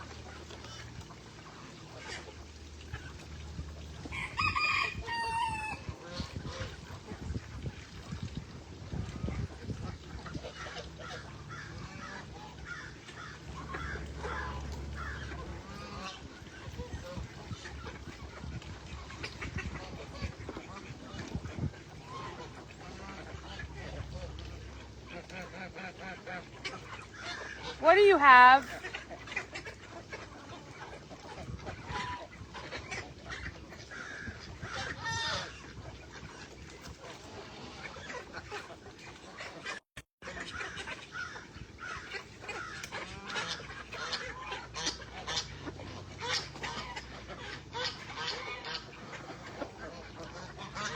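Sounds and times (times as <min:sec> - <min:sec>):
high-pitched poultry call: 0:04.1 - 0:06.2
chickens clucking: 0:08.9 - 0:50.9
geese honking: 0:10.4 - 0:18.2, 0:40.4 - 0:50.9.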